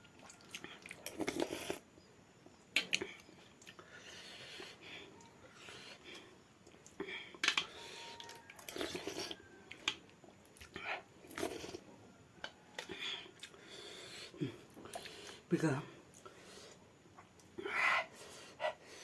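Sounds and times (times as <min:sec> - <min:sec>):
person chewing food: 0:00.0 - 0:19.0
mouth clicks and smacks: 0:02.7 - 0:03.8.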